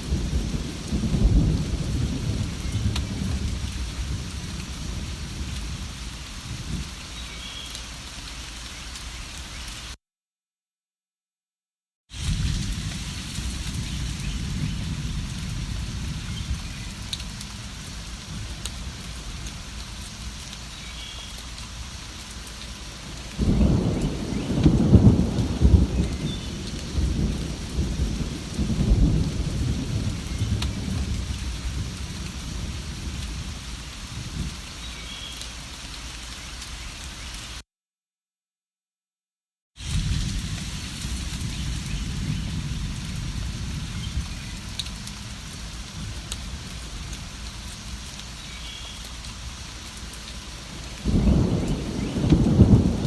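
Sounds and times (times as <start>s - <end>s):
thunder rumbling: 0.0s - 6.9s, 12.2s - 20.0s, 23.0s - 34.6s, 39.8s - 47.9s, 50.5s - 53.0s
steady rain falling: 0.0s - 10.0s, 12.1s - 37.6s, 39.8s - 53.0s.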